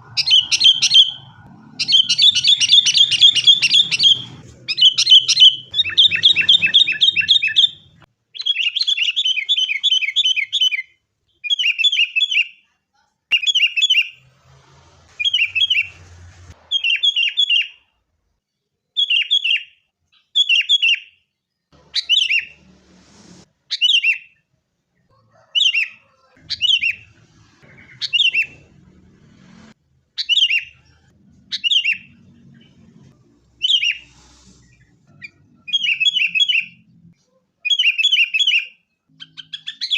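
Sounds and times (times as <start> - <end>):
bird chattering and calling: 0.0 - 10.2.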